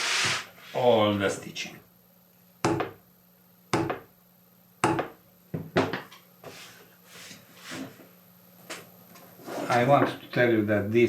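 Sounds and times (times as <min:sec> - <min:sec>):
mallet striking hole punch: 0:02.6 - 0:03.0, 0:03.7 - 0:04.1, 0:04.8 - 0:05.2.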